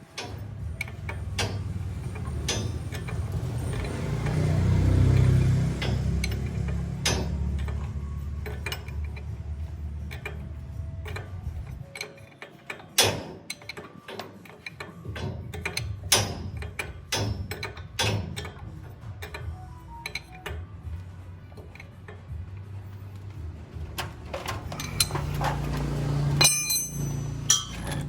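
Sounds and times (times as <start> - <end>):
metallic tool clicks and knocks: 0.1 - 9.3, 24.0 - 28.0.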